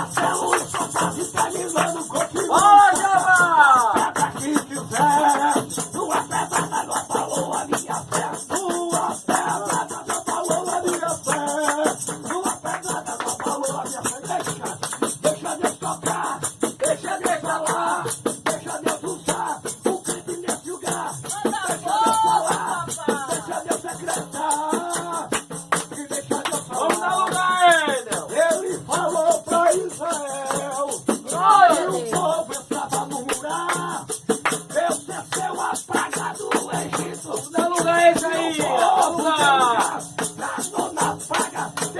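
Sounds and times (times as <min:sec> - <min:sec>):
shaker rhythm: 0:00.0 - 0:41.9
person singing: 0:26.0 - 0:41.9.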